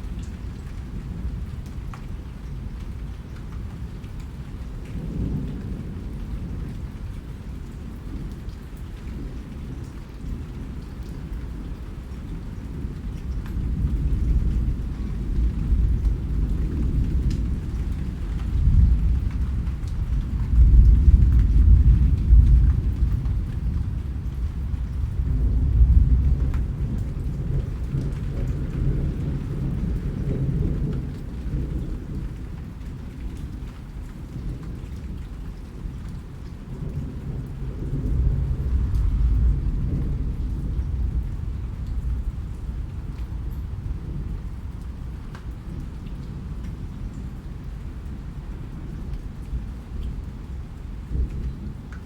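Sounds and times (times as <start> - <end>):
rain falling: 0.0 - 52.0
rolling thunder: 12.0 - 34.7, 35.7 - 49.0.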